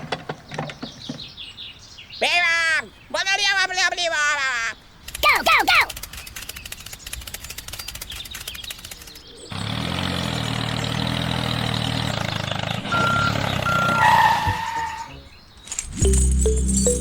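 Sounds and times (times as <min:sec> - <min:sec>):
small motor ticking: 0:05.8 - 0:09.5.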